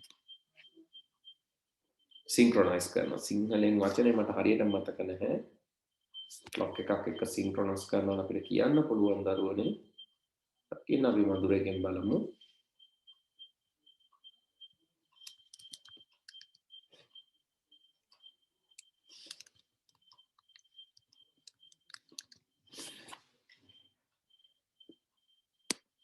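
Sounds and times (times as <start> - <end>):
computer keyboard typing: 15.2 - 16.7, 18.8 - 22.5
mouse clicking: 15.2 - 16.7, 18.2 - 22.4.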